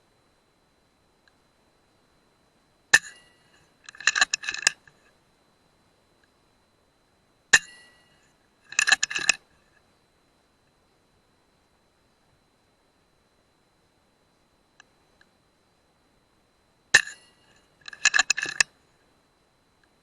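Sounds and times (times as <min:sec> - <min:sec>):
metallic clicks and clinks: 0:03.8 - 0:04.9, 0:08.7 - 0:09.4, 0:17.0 - 0:18.7.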